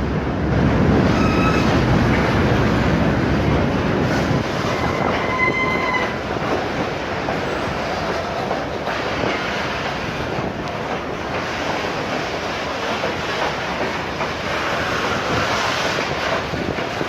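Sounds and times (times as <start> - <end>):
train running on rails: 0.0 - 17.0
high-pitched wheel squeal: 1.1 - 1.8, 4.6 - 6.2.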